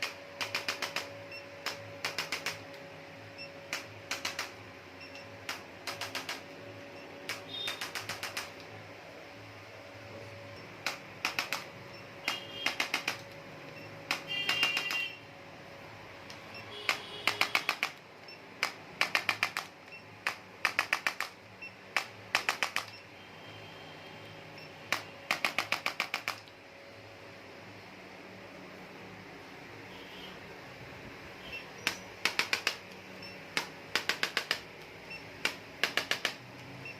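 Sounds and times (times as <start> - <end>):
rapid sharp taps: 31.8 - 34.8, 35.4 - 36.4.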